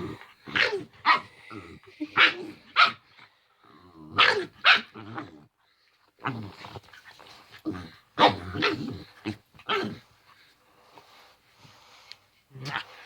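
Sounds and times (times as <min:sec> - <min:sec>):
dog growling: 0:07.6 - 0:10.1.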